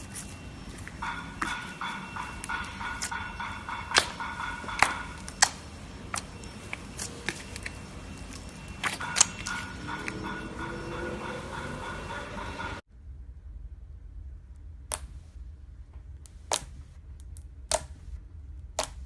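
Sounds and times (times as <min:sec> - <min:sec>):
slime clicking and popping: 0:14.8 - 0:15.2, 0:16.2 - 0:18.0, 0:18.6 - 0:19.0.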